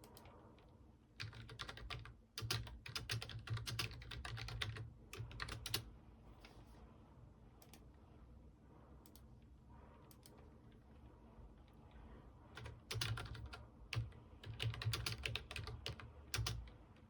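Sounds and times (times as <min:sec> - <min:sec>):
computer keyboard typing: 0:01.2 - 0:05.9, 0:12.5 - 0:16.8.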